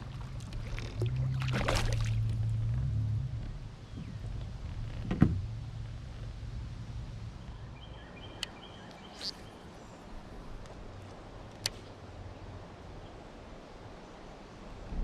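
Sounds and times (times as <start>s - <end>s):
water and hull rumble: 0.0s - 8.5s, 9.4s - 15.0s
faint bird chirping: 7.4s - 10.1s.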